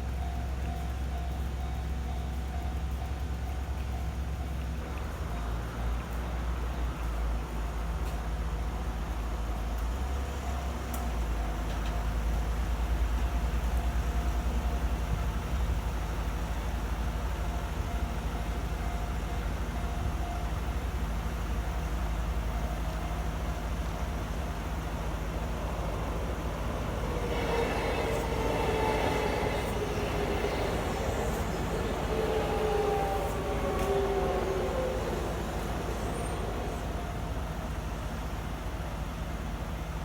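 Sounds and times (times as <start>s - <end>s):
electric train rumbling: 0.0s - 40.0s
train motor whine: 18.1s - 39.2s.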